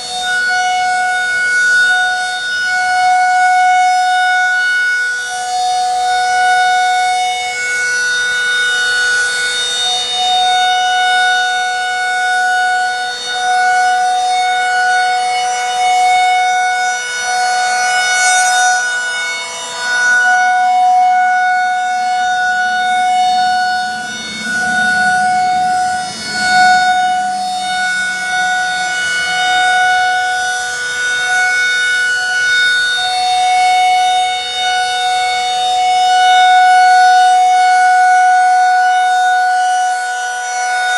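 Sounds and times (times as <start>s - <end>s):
rotating warning siren: 0.0s - 40.9s
low swelling sound: 21.0s - 38.0s.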